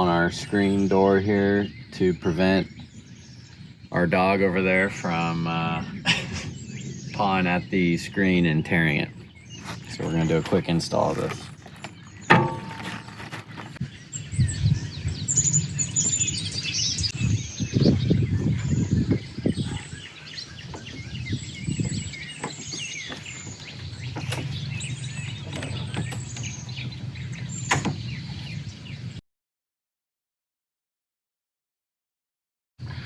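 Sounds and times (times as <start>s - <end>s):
small birds chirping: 0.0s - 29.2s
handling knocks and clicks: 10.0s - 13.8s, 21.8s - 27.0s, 27.7s - 28.0s.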